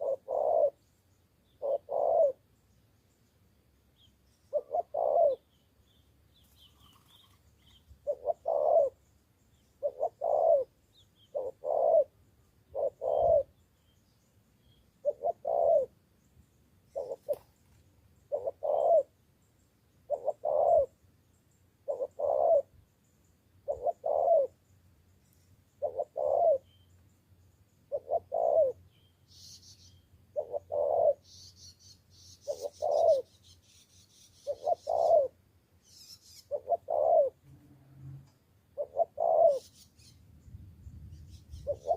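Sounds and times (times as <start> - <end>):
dove cooing: 0.0 - 0.8, 1.5 - 2.4, 4.5 - 5.5, 6.4 - 9.0, 9.8 - 13.6, 15.0 - 15.9, 16.9 - 17.6, 18.3 - 19.1, 20.1 - 21.0, 21.8 - 22.7, 23.6 - 24.6, 25.8 - 26.8, 27.9 - 28.8, 30.3 - 31.4, 32.4 - 33.4, 34.4 - 35.4, 36.0 - 40.1, 41.2 - 41.9
small birds chirping: 0.0 - 41.9.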